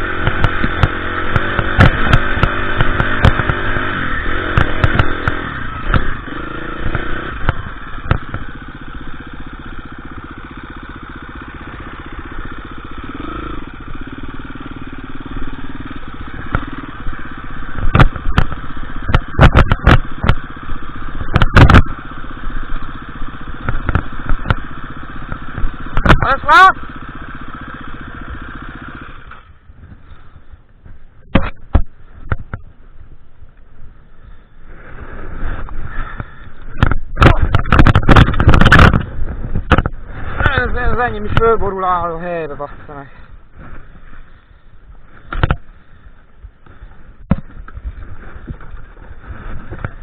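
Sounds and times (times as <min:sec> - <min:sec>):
dirt bike engine running: 0:00.0 - 0:50.0
loud sharp knocks and clatter: 0:00.2 - 0:03.7, 0:04.5 - 0:06.2, 0:17.8 - 0:20.5, 0:21.2 - 0:22.0, 0:36.8 - 0:40.0.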